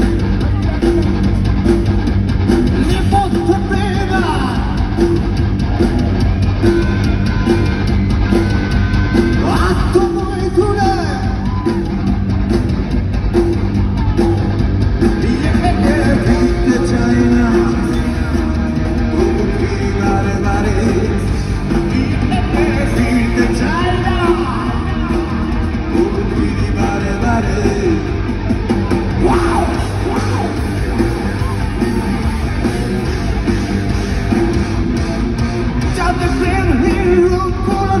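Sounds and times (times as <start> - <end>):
drum kit: 0.0 - 38.0
guitar: 0.0 - 38.0
rock band playing loudly: 0.0 - 38.0
person singing: 15.2 - 28.2.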